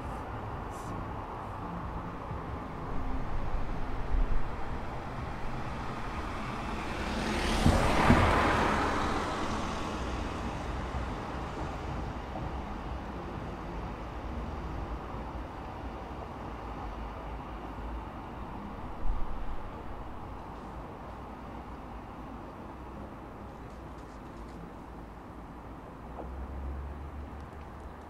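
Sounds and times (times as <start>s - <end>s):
low traffic hum: 0.0s - 28.0s.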